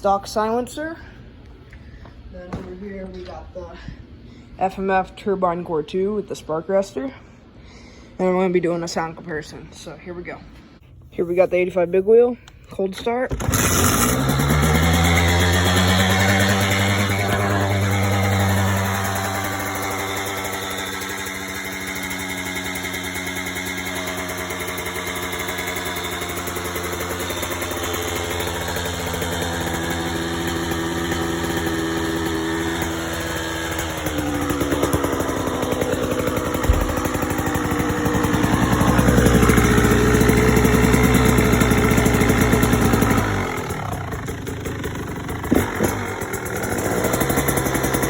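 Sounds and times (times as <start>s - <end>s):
two-stroke engine idling: 13.4s - 48.0s.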